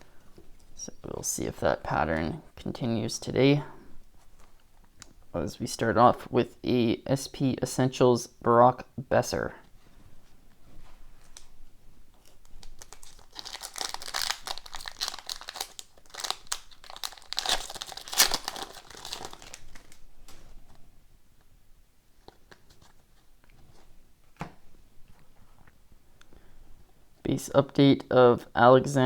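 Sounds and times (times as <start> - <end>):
foil wrapper crinkling and tearing: 12.2 - 20.4.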